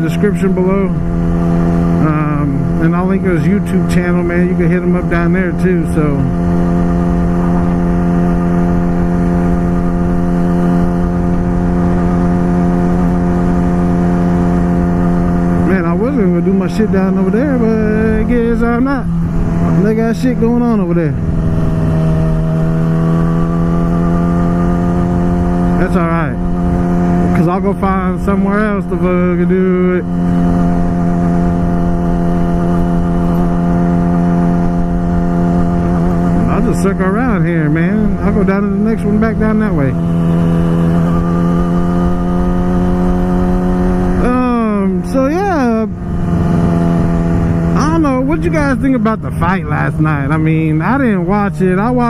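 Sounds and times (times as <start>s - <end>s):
motorcycle engine running: 0.0s - 52.0s
wind rumble on microphone: 17.3s - 52.0s.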